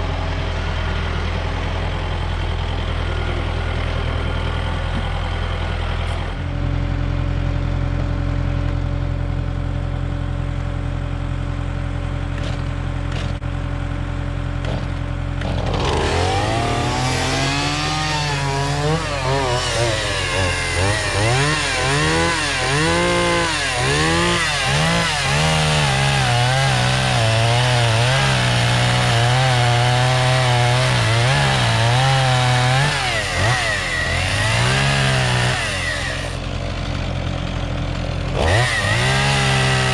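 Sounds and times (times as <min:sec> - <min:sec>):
engine idling: 0:00.0 - 0:26.7, 0:32.3 - 0:39.9
chainsaw cutting logs: 0:12.3 - 0:13.6, 0:14.5 - 0:39.9.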